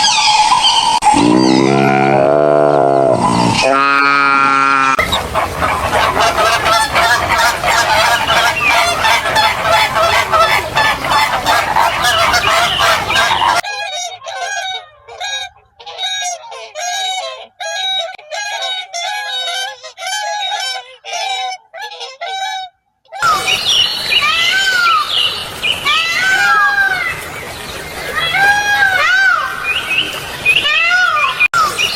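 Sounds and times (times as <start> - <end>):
large flock of birds calling: 4.9 - 21.8.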